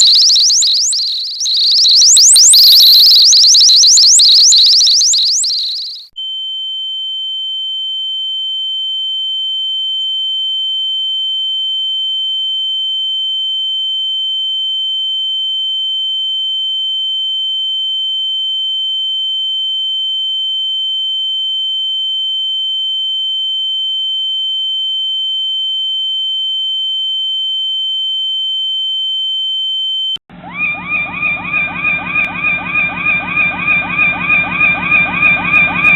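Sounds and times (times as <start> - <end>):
falling electronic chirps: 0.0 - 6.1, 30.3 - 35.9
high-pitched electronic tone: 0.0 - 6.1, 30.3 - 35.9.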